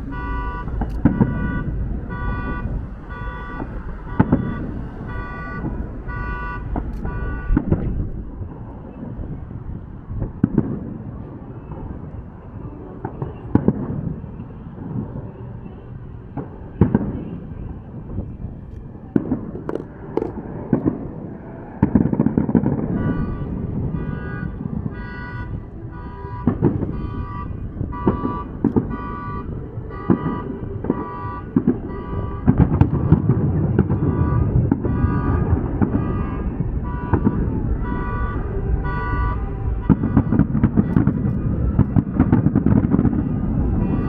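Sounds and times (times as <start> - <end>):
car alarm horn pulsing: 0.0 - 8.3, 22.7 - 42.2, 43.7 - 44.0
fireworks bangs and pops: 0.0 - 44.0
low rumble: 0.0 - 44.0.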